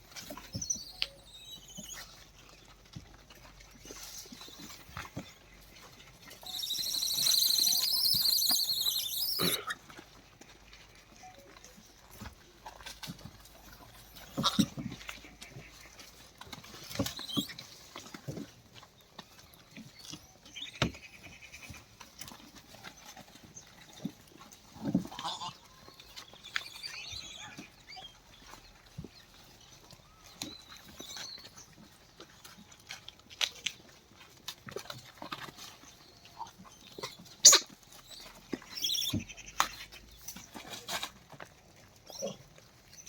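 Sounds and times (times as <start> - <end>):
monkey high chirps: 0.3 - 2.2, 6.3 - 9.8, 17.1 - 17.6, 26.5 - 28.1, 37.0 - 37.7, 38.7 - 39.2.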